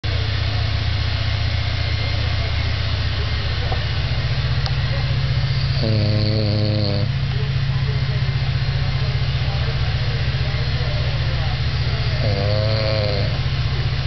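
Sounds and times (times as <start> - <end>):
man snoring: 5.6 - 7.1, 12.2 - 13.4.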